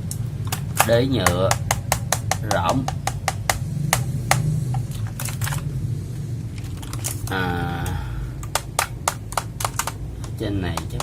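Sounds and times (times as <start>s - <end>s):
clicky keyboard keys pressed: 8.4s - 11.0s.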